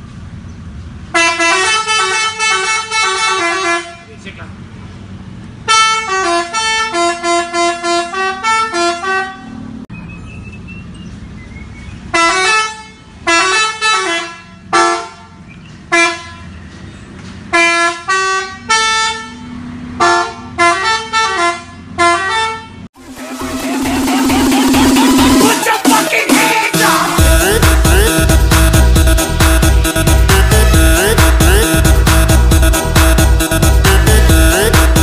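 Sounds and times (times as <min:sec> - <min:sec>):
musical horn playing a tune: 0:01.2 - 0:04.0, 0:05.7 - 0:09.6, 0:20.0 - 0:35.0.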